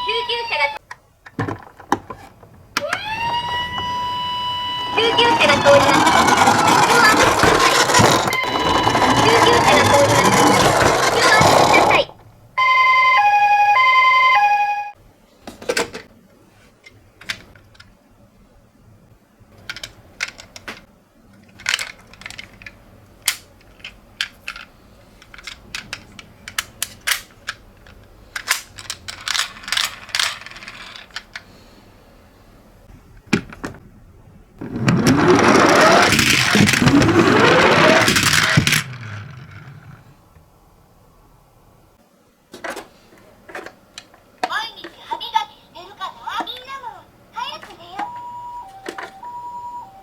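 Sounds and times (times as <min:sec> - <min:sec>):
toy electronic two-tone siren: 0:02.8 - 0:06.5, 0:08.3 - 0:10.2, 0:12.6 - 0:14.9, 0:48.0 - 0:50.0.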